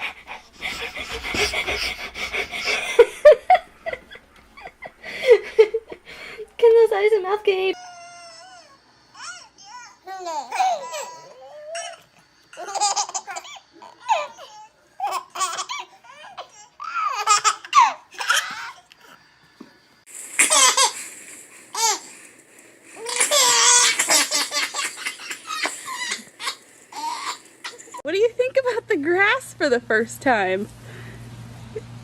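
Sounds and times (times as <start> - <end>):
baby laughing: 0.0 - 4.7, 8.0 - 18.9, 20.4 - 21.1, 21.7 - 22.2, 22.9 - 28.0.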